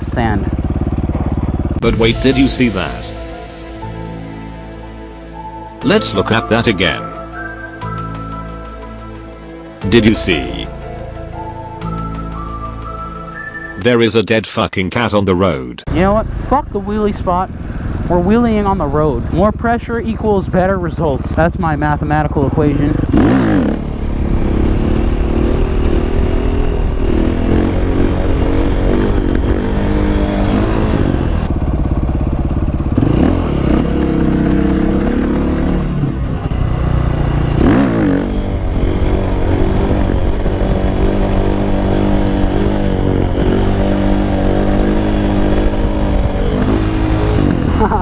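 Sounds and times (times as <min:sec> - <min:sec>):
motorcycle engine revving: 0:00.0 - 0:13.7, 0:15.9 - 0:48.0.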